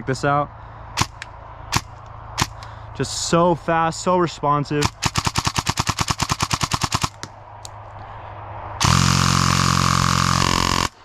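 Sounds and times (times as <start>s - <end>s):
airsoft gun firing rapid shots: 1.0s - 2.6s, 4.8s - 7.3s, 8.8s - 11.0s
loud steady humming noise: 8.8s - 11.0s.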